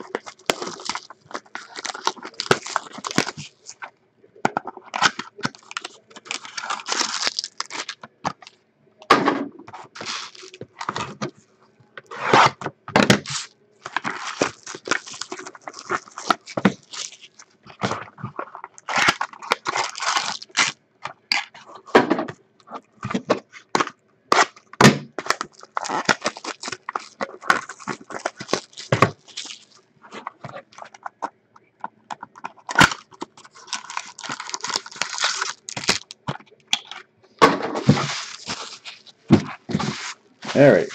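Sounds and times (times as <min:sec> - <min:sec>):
wrappers crinkling and tearing: 0:00.0 - 0:03.9, 0:05.0 - 0:08.5, 0:09.9 - 0:11.0, 0:13.2 - 0:21.6, 0:24.3 - 0:31.3, 0:32.4 - 0:36.4, 0:37.8 - 0:40.9.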